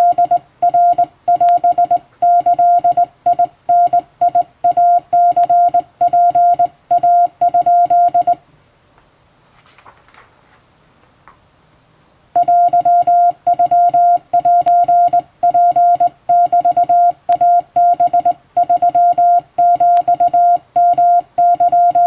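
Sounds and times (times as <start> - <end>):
morse code tone: 0.0 - 8.4, 12.4 - 22.0
faint rustle: 9.0 - 11.4.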